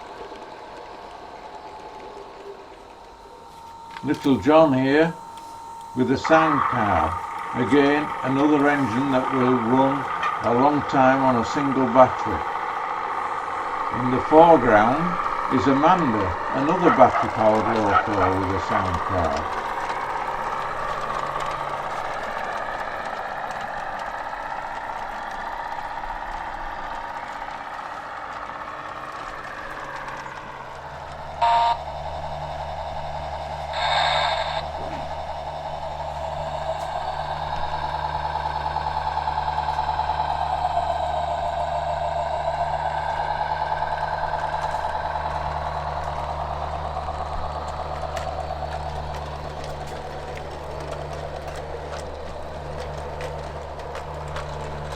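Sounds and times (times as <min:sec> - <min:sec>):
low steady hum: 0:00.0 - 0:54.9
recorded locomotive engine sound: 0:00.0 - 0:54.9
short horn blasts: 0:31.4 - 0:31.9.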